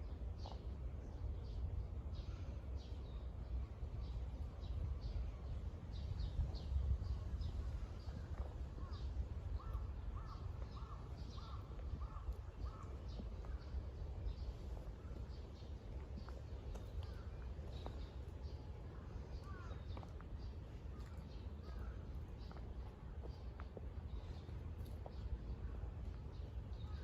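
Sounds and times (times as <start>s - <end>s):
birds chirping: 9.6s - 27.0s.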